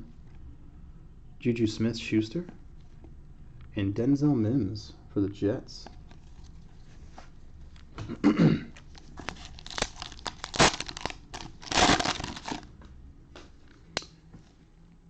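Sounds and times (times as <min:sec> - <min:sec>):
plastic wrapper crinkling and tearing: 0:08.8 - 0:12.7.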